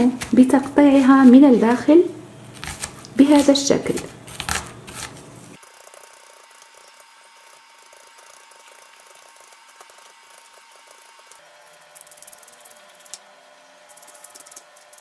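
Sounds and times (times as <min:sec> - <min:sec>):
knife cutting into onion: 0:02.4 - 0:06.3.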